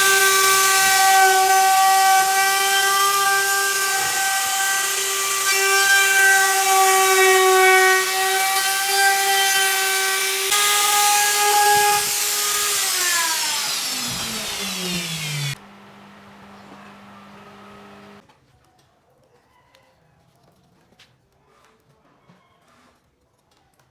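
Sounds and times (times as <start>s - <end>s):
power tool motor whining: 9.2s - 18.2s.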